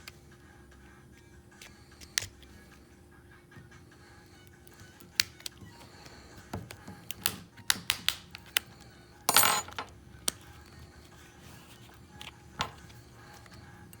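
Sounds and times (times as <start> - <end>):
tools and parts clicking: 9.3 - 10.4.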